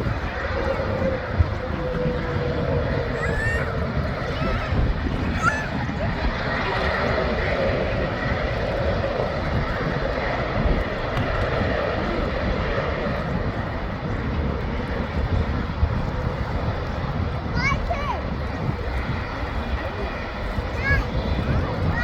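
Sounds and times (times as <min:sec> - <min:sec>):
faint jet engine whine: 0:00.0 - 0:22.0
jet engines drone: 0:00.0 - 0:22.0.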